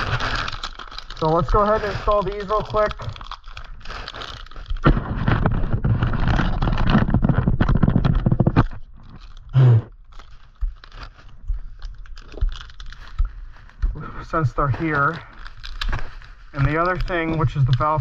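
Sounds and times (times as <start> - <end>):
packaging scraping and rustling: 0.0 - 18.0.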